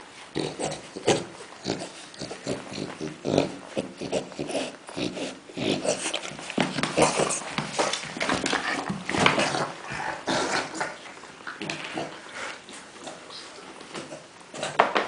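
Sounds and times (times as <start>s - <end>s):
dog grunting and snorting: 0.3s - 13.3s.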